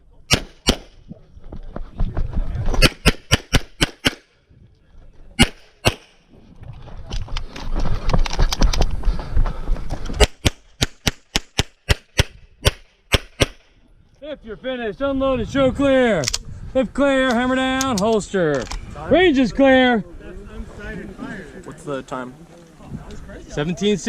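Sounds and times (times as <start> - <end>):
pistol shots: 0.3 - 1.0, 2.8 - 4.3, 5.4 - 6.2, 10.2 - 13.7.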